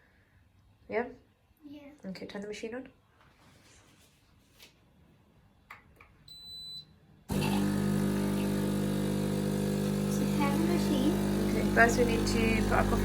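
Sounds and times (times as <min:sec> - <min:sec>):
espresso machine humming: 0:07.3 - 0:13.0.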